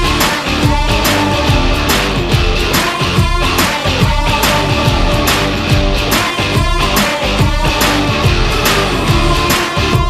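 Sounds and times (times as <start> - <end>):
rock music with drums and guitar: 0.0 - 10.0.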